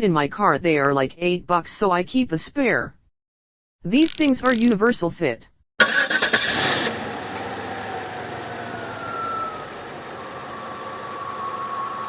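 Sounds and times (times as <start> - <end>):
car engine idling: 5.8 - 12.0
faint engine whine: 5.8 - 12.0.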